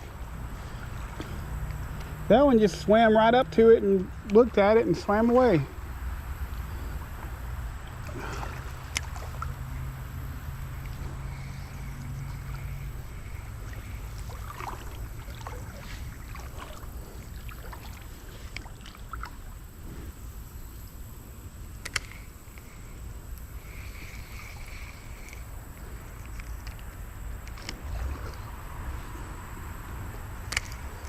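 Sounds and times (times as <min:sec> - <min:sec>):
water sloshing as person wades: 0:00.0 - 0:31.0
sharp clicks: 0:21.8 - 0:22.7.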